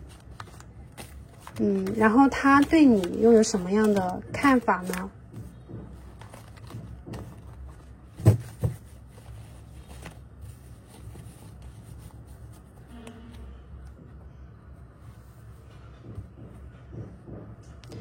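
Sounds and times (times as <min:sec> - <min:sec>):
cards shuffling: 0:00.0 - 0:05.1, 0:06.0 - 0:12.9.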